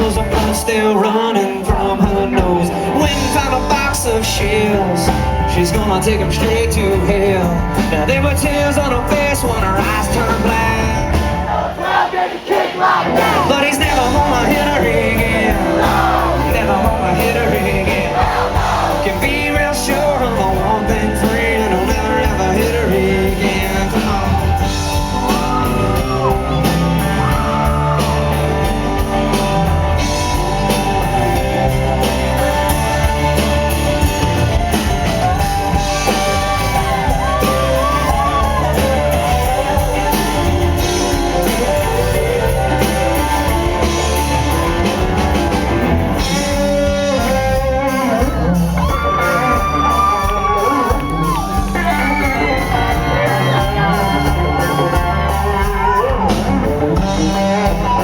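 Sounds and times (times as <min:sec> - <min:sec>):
bending lead guitar line: 0:00.0 - 0:11.7, 0:13.0 - 0:58.0
country-rock band playing: 0:00.0 - 0:58.0
people shouting: 0:11.4 - 0:13.8, 0:18.0 - 0:19.2, 0:29.8 - 0:43.5, 0:48.3 - 0:56.7.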